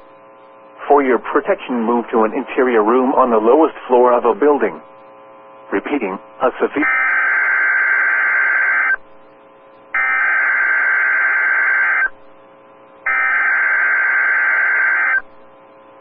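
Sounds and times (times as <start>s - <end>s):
buzzing digital data tone: 6.8s - 16.0s.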